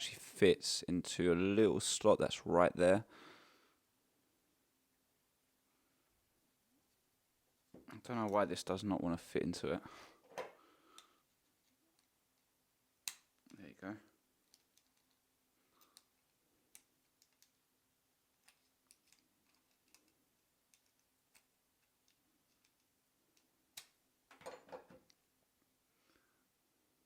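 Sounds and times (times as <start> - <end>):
small metal parts clicking: 18.4 - 23.9.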